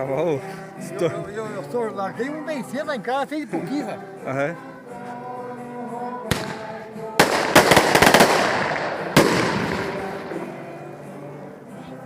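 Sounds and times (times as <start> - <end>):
fireworks bangs: 6.3 - 10.5
fireworks crackling: 6.3 - 10.5.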